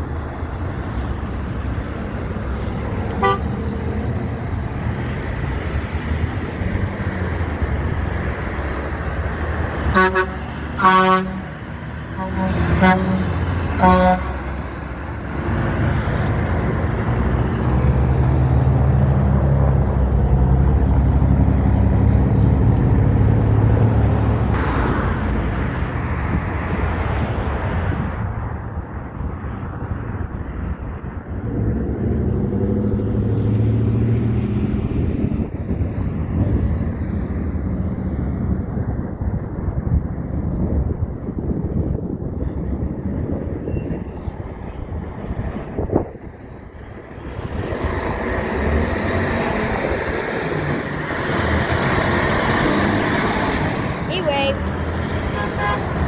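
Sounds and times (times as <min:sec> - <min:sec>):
truck engines passing: 0:00.0 - 0:56.0
truck horn blasts: 0:03.0 - 0:03.9, 0:09.8 - 0:14.7, 0:55.2 - 0:56.0.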